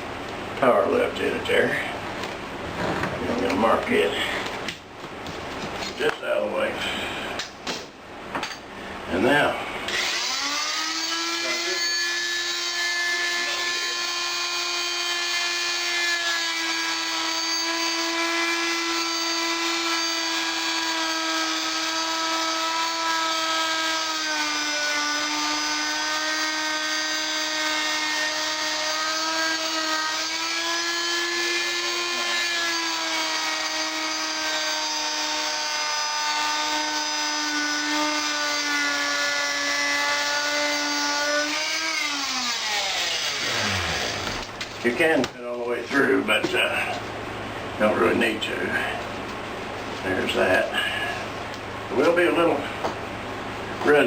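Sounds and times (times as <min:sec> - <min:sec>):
oscillating multi-tool cutting tile: 0:09.9 - 0:44.6.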